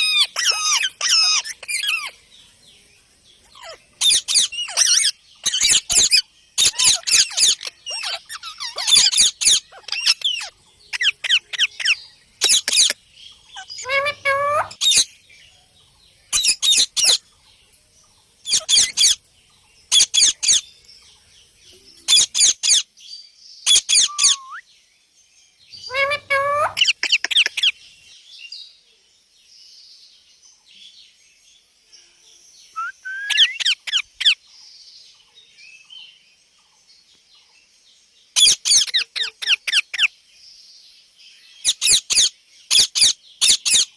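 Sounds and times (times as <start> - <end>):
parakeet chatter: 0.0 - 2.2, 3.4 - 15.2, 16.3 - 17.3, 18.4 - 19.2, 19.8 - 20.9, 21.7 - 22.9, 23.6 - 24.5, 25.8 - 27.9, 33.3 - 34.4, 38.4 - 40.1, 41.6 - 43.9
parakeets calling: 0.0 - 2.6, 3.4 - 15.2, 16.3 - 17.4, 18.4 - 20.9, 21.9 - 22.9, 23.6 - 24.6, 25.7 - 28.0, 32.8 - 34.4, 38.4 - 40.1, 41.6 - 43.9.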